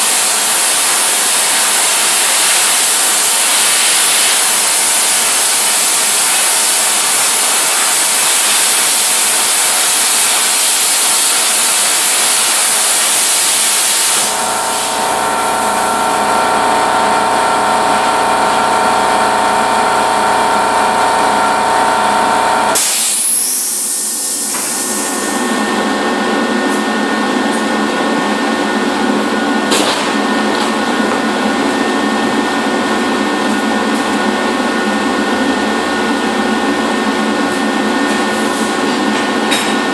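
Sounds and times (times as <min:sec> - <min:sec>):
plasma cutter hissing: 0:00.0 - 0:17.0, 0:21.4 - 0:25.8
steady hums: 0:14.2 - 0:22.8.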